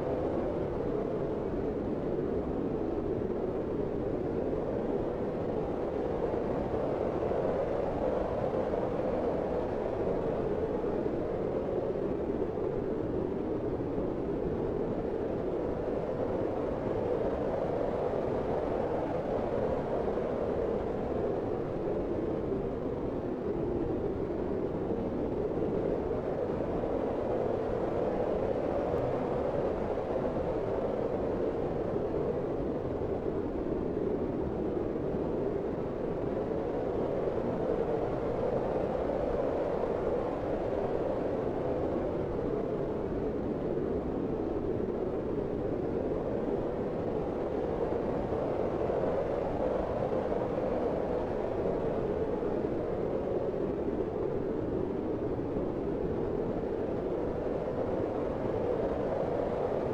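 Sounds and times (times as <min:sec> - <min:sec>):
blizzard wind blowing: 0:15.0 - 0:59.9.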